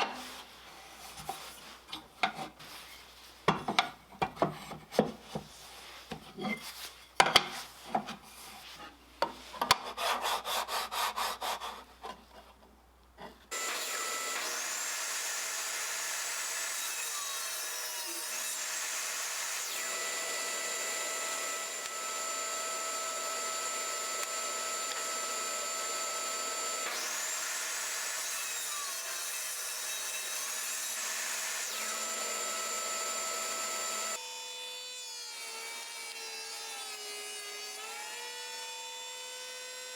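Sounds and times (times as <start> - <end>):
power saw cutting wood: 13.5 - 39.9.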